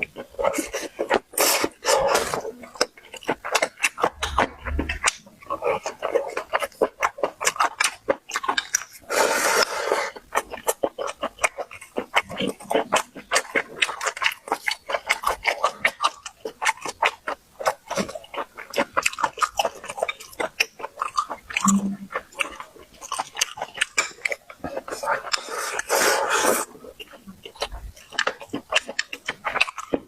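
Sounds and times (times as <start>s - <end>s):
chewing and mouth clicks: 0.0s - 30.0s.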